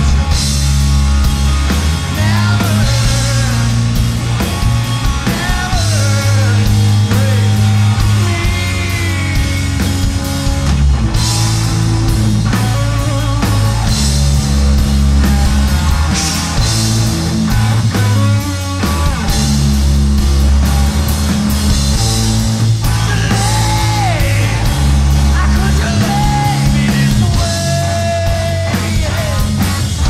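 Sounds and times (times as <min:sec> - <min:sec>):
bass guitar: 0:00.0 - 0:30.0
distorted electric guitar: 0:00.0 - 0:30.0
drum kit with cymbal crashes: 0:00.0 - 0:30.0.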